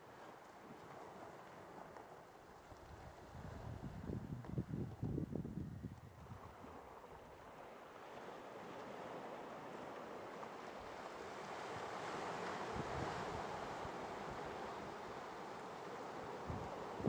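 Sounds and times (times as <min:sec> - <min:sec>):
surf: 0:00.0 - 0:17.0
wind buffeting microphone: 0:02.7 - 0:07.4, 0:12.6 - 0:14.7, 0:16.3 - 0:17.0.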